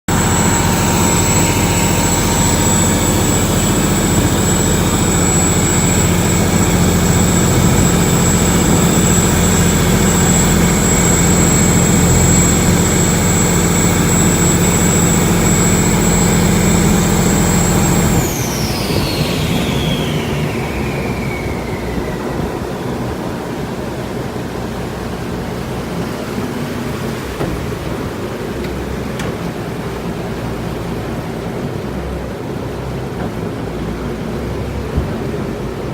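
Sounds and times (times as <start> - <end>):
high engine whine: 0.0 - 35.9
boat engine running hard: 0.1 - 35.9.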